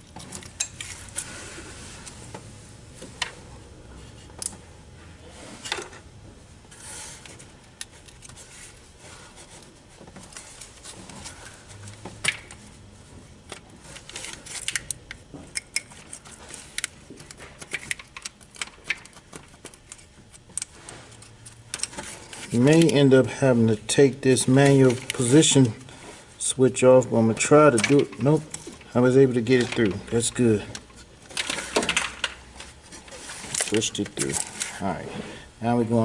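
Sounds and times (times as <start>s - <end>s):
clicks and rattles of handled parts: 13.5s - 23.1s, 27.4s - 34.8s.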